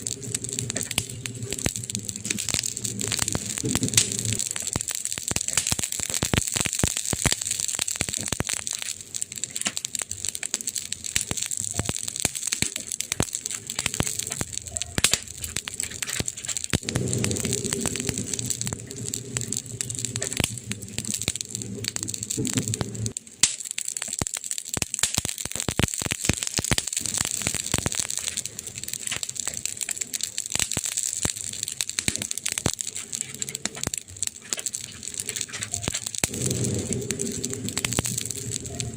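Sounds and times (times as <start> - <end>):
low rumble: 0.0 - 4.7, 15.3 - 23.2, 35.2 - 38.9
wood fire crackling and popping: 0.0 - 38.9.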